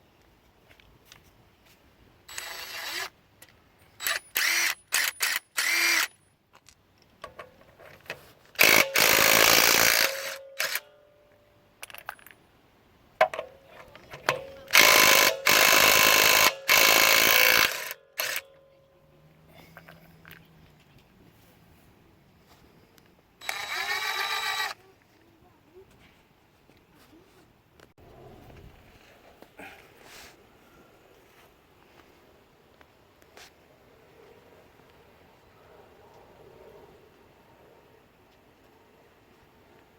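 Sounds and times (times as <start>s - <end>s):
impact wrench running: 8.6s - 10.8s, 14.3s - 18.4s.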